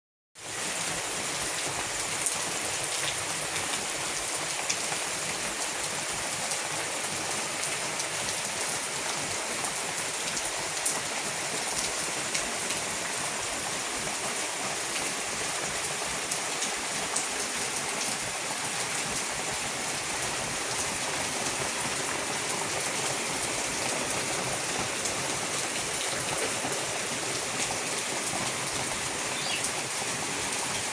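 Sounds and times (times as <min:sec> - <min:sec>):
heavy rain pouring: 0:00.4 - 0:30.9.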